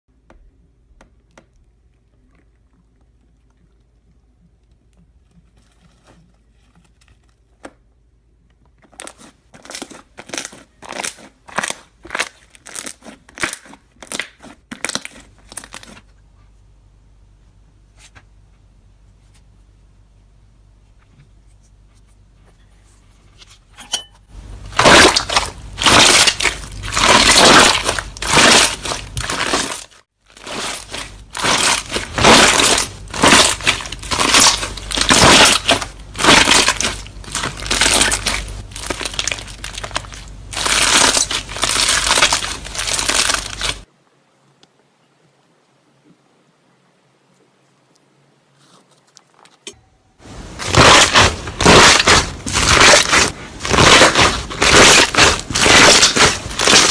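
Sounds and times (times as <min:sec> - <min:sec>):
faint hum: 0:15.1 - 0:56.9
objects being crushed: 0:24.3 - 0:43.9, 0:50.3 - 0:56.9.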